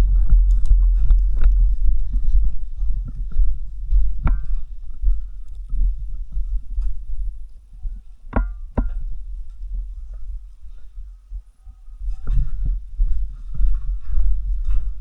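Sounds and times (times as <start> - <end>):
low rumble of moving camera: 0.0 - 15.0
sharp ringing knocks: 8.3 - 9.2.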